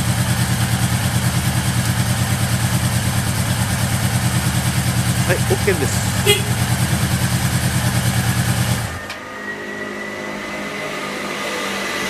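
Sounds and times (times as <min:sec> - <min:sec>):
motorcycle engine running: 0:00.0 - 0:09.0.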